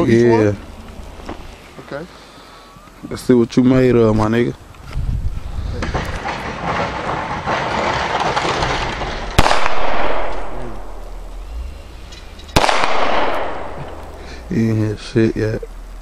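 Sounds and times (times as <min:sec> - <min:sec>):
gunshots echoing: 0:09.0 - 0:11.7, 0:12.5 - 0:14.5.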